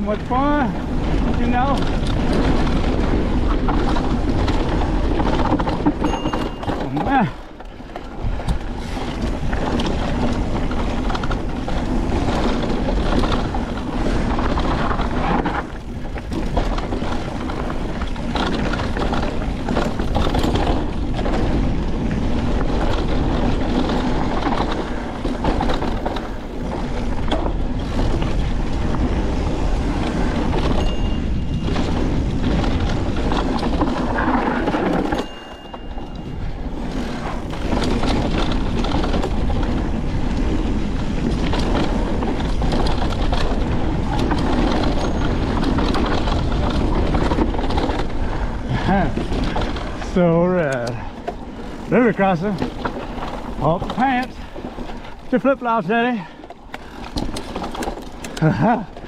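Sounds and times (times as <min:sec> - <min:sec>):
bike rattling over rocks: 0:00.0 - 0:59.0
wind on microphone: 0:00.0 - 0:59.0.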